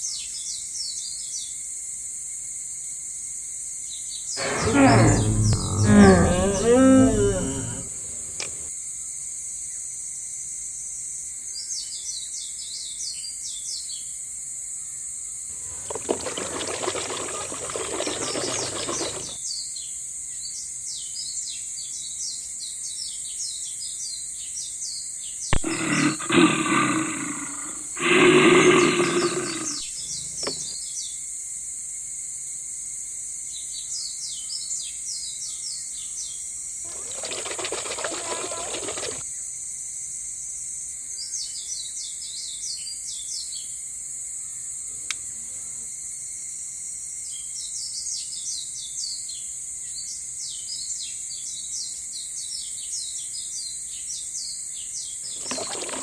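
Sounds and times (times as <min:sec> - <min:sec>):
animal roaring call: 0:04.4 - 0:08.6, 0:25.6 - 0:30.6, 0:36.9 - 0:39.2.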